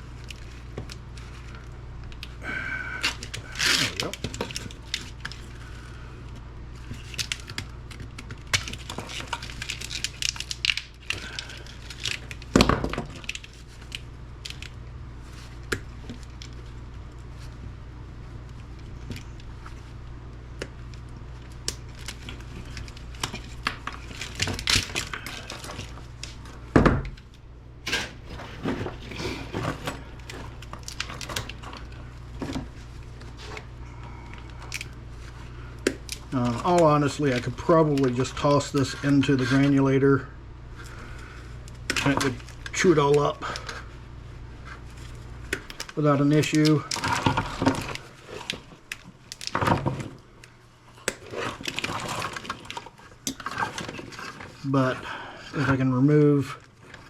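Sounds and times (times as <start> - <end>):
steady low hum: 0.0 - 57.0
wires crinkling and rustling: 0.0 - 57.0
electrical tape tearing and peeling: 3.0 - 5.6.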